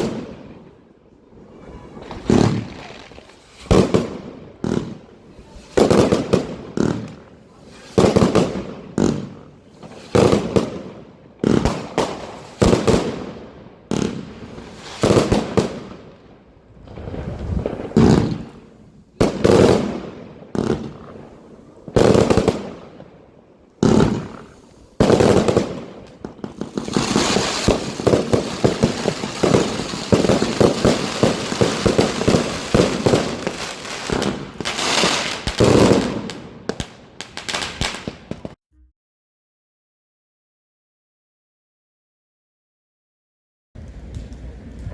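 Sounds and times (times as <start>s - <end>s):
firework cake shots and bursts: 1.6s - 16.2s, 23.8s - 38.6s.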